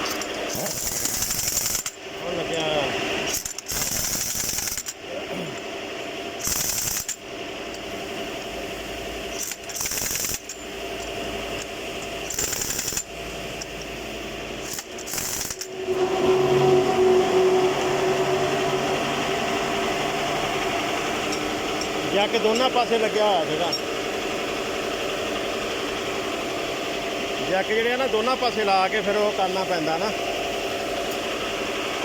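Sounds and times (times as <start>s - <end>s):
pneumatic impact wrench rattling: 0.0s - 2.0s, 3.2s - 5.0s, 6.4s - 7.2s, 9.3s - 14.0s, 14.6s - 15.8s
steady machine hum: 0.0s - 32.0s.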